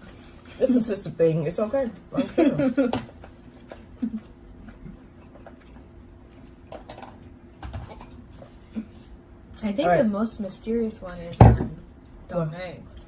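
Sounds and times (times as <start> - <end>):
faint eating clicks and taps: 2.9 - 8.5.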